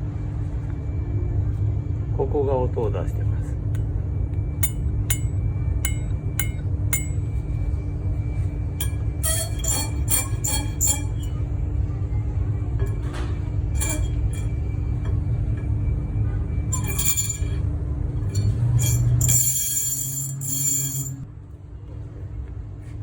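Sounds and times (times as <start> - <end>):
metallic brake chinks: 4.6 - 7.6, 8.8 - 11.8, 12.7 - 17.6, 18.2 - 21.3.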